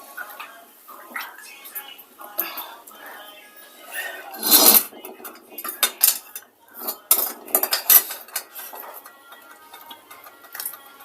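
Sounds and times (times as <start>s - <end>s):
cutlery clinking on plates: 4.4s - 11.0s.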